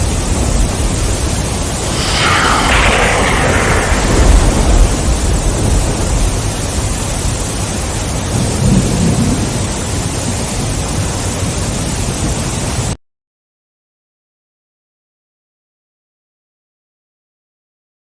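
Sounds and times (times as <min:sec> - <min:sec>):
heavy rain: 0:00.0 - 0:13.0
thunder rumbling: 0:01.6 - 0:09.8.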